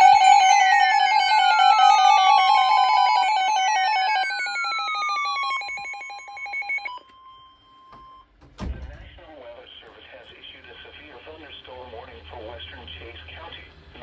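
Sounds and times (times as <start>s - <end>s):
rapidly pulsing alert tones: 0.0s - 7.0s.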